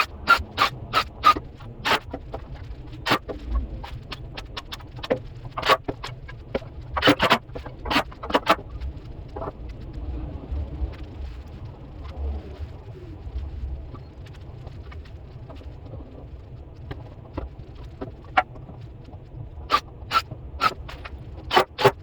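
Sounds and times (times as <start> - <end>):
low steady hum: 0.0 - 22.0.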